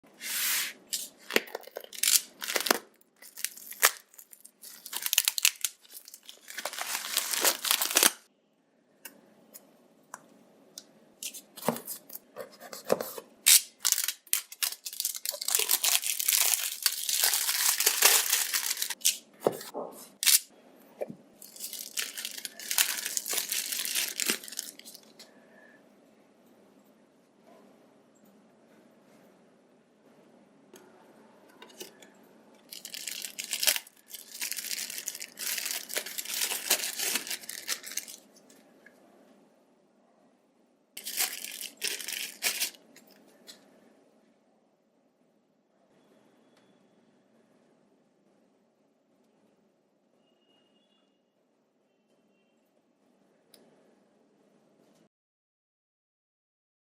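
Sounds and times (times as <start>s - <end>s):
plastic and paper crinkling: 0.2s - 8.3s, 11.2s - 20.5s, 21.4s - 25.3s, 32.7s - 38.6s, 41.0s - 43.6s.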